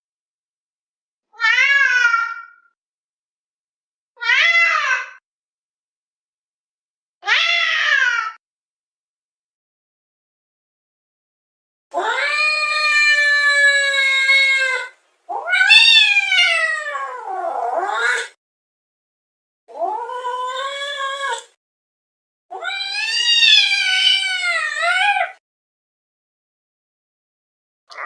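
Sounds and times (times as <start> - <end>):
cat yowling: 1.3 - 2.8, 4.2 - 5.2, 7.2 - 8.4, 12.0 - 18.4, 19.7 - 21.6, 22.5 - 25.4.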